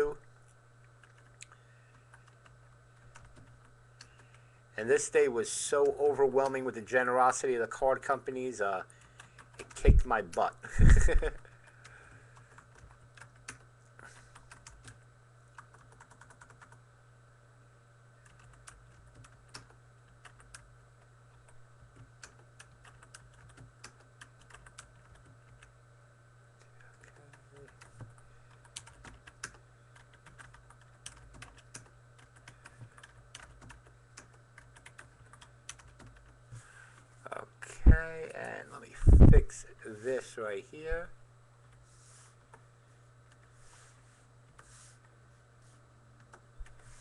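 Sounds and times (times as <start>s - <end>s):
low electrical hum: 0.0s - 47.0s
typing on computer keyboard: 3.1s - 4.3s, 9.0s - 9.9s, 14.3s - 15.0s, 15.6s - 16.8s, 18.2s - 20.7s, 22.0s - 25.7s, 27.0s - 36.4s.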